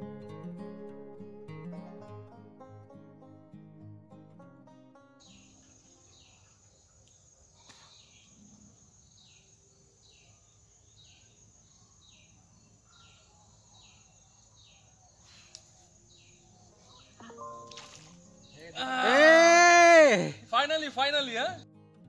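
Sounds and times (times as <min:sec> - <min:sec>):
bird chirping: 0:05.2 - 0:18.8
high insect drone: 0:15.4 - 0:20.8.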